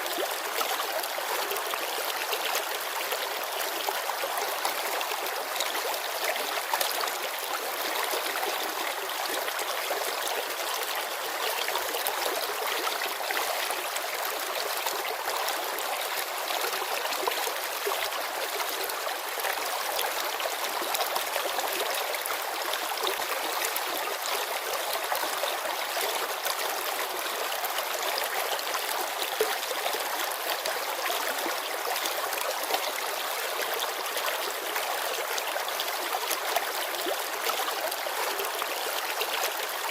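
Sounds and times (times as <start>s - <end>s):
river flowing over stones: 0.0s - 39.9s.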